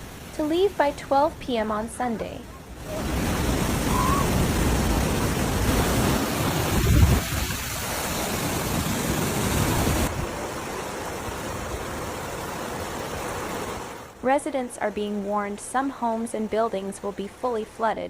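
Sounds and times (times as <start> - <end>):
floodwater rushing: 0.0 - 14.2.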